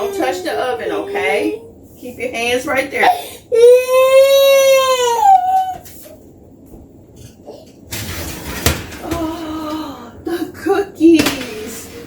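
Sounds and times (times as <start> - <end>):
toddler wailing: 3.5 - 5.8.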